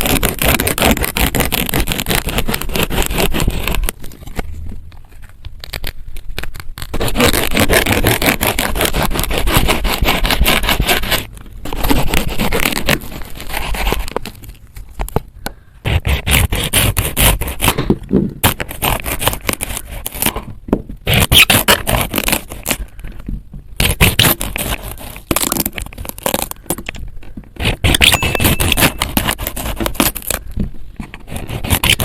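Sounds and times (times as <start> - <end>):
plastic knife sawing through fruit: 0.0 - 4.0, 6.8 - 14.2, 15.9 - 22.8, 23.8 - 26.6, 27.6 - 32.0.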